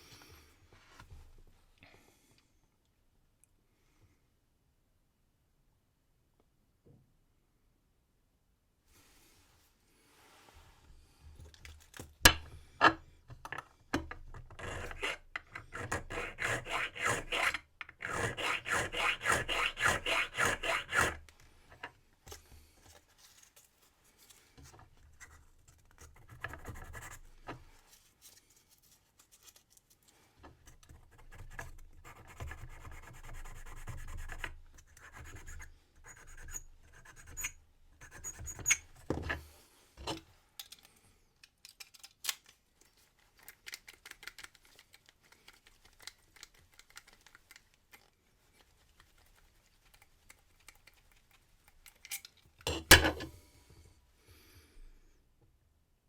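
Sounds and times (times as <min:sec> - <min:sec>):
file rasping on brass key: 0:14.5 - 0:21.2, 0:35.1 - 0:38.9.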